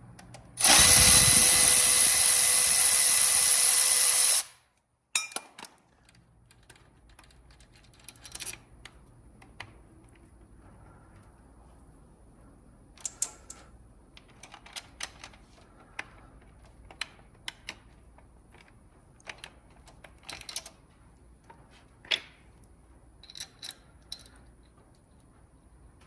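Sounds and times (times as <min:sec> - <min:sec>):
metallic clicks and clinks: 0:05.2 - 0:05.8, 0:23.2 - 0:24.4.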